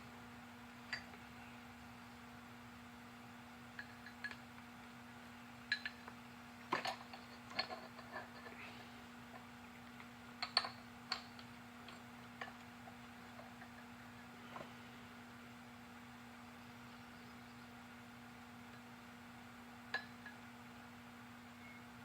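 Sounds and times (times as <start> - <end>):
steady low hum: 0.0 - 22.0
small metal parts clinking: 6.7 - 8.6.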